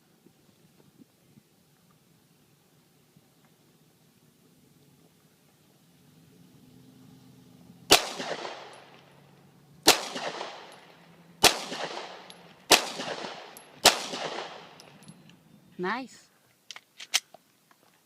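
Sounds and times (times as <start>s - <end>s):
pistol shots with echo: 7.9s - 9.0s, 9.8s - 14.9s.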